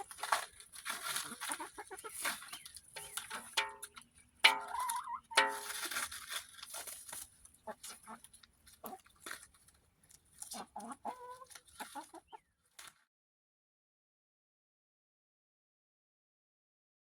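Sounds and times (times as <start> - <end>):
hens clucking: 0.0 - 9.5, 10.1 - 12.5.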